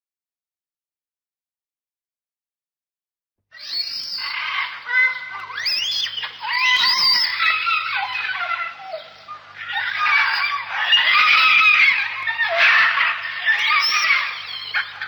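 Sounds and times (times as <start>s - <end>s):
birds calling: 3.6s - 15.0s.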